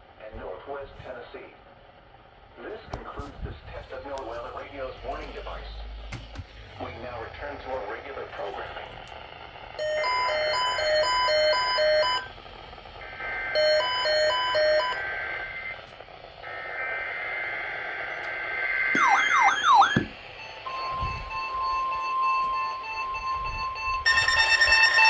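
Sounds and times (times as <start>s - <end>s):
steady warning alarm tone: 9.8s - 12.5s, 13.3s - 15.8s, 17.0s - 25.0s
buzzing two-tone digital data: 19.0s - 20.1s
alternating electronic beeps: 19.0s - 25.0s.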